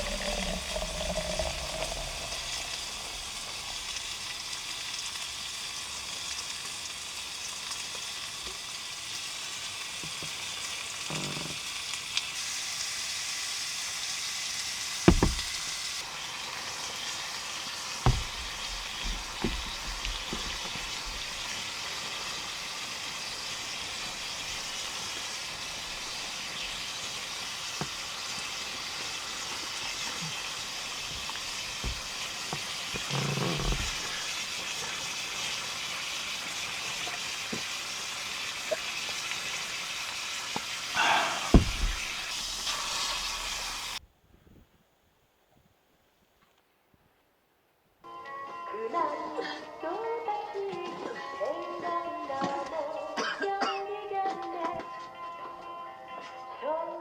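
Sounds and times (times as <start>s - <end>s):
food sizzling in a pan: 0.0s - 44.0s
sharp knocks: 15.1s - 15.6s, 18.1s - 21.4s, 31.1s - 32.2s, 41.5s - 42.4s.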